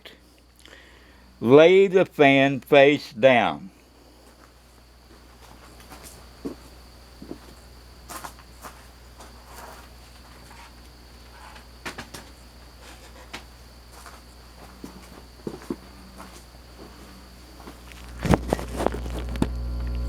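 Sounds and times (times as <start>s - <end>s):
low hum: 13.5s - 20.0s.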